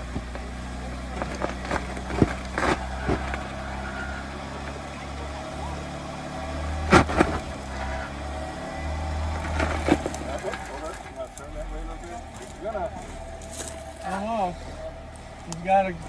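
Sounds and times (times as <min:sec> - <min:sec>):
engine running at low throttle: 0:00.0 - 0:16.0
sharp knocks: 0:06.8 - 0:07.6.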